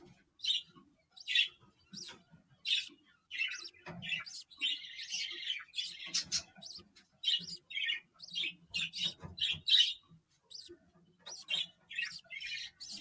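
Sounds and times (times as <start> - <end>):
parrot chirping: 0.4 - 13.0.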